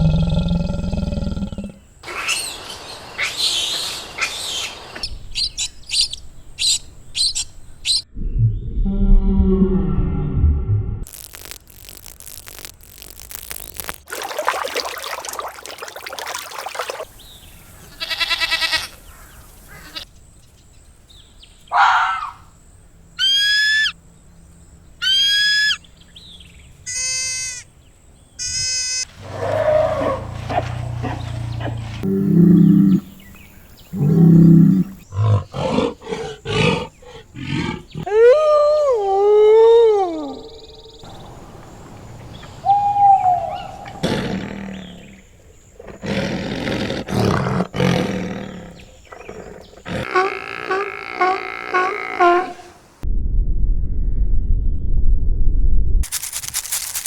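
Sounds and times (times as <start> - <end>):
big cat roaring: 0.0 - 1.8, 29.2 - 33.3, 33.9 - 38.1, 43.8 - 45.2, 45.8 - 52.7
long wavering animal calls: 23.2 - 24.0, 25.0 - 25.8, 28.4 - 40.9, 42.4 - 45.2, 50.0 - 52.7
whistling calls and trills: 25.0 - 27.6, 39.9 - 44.0.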